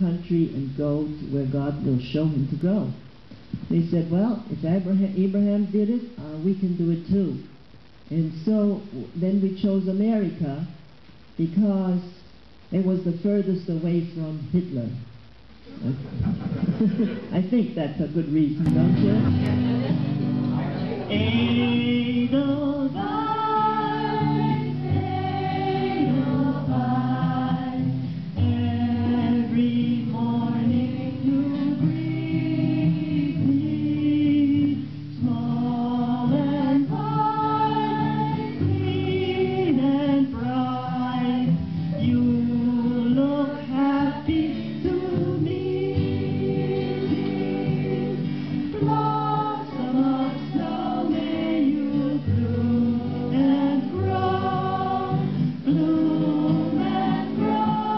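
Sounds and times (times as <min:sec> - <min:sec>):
group of voices singing: 0:18.7 - 0:57.9.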